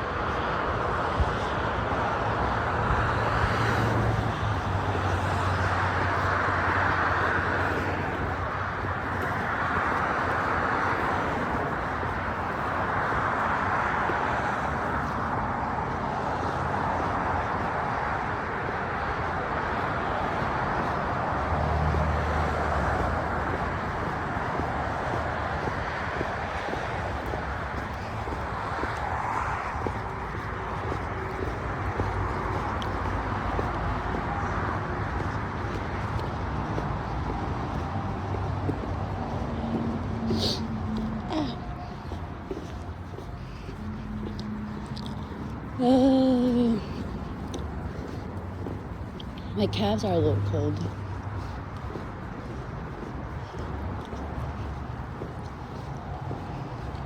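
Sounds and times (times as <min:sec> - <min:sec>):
outdoor traffic noise: 0:00.0 - 0:57.0
passing vehicle engine hum: 0:00.0 - 0:57.0
heavy breathing: 0:20.8 - 0:49.6.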